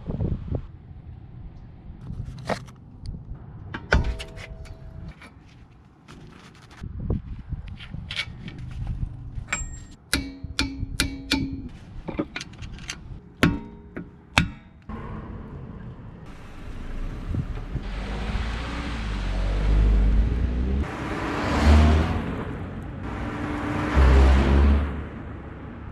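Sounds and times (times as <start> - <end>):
road noise: 0.0 - 25.9
metallic tool clanks and taps: 3.7 - 5.4, 9.5 - 14.9
car engine: 14.8 - 25.9.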